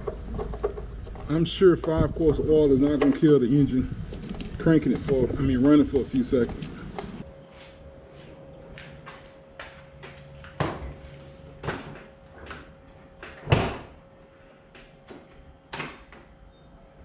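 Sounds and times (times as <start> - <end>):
door slam: 13.4 - 14.0.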